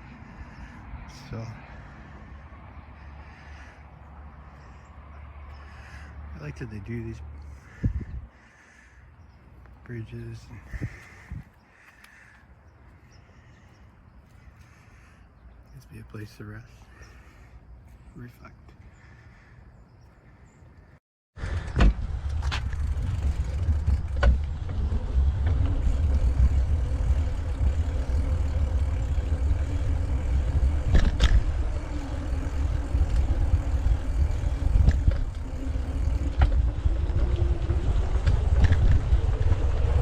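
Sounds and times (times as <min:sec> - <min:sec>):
wind rumble on microphone: 0:07.6 - 0:08.4, 0:10.5 - 0:11.6, 0:21.4 - 0:40.0
bike rattling over bumps: 0:21.4 - 0:40.0.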